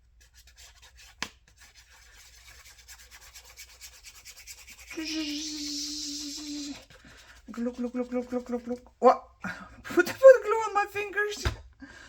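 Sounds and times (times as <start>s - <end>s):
paper rubbing: 0.2s - 8.9s.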